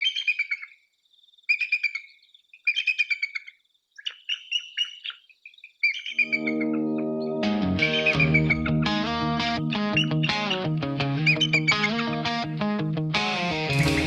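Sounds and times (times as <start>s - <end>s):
guitar music: 6.2s - 14.0s.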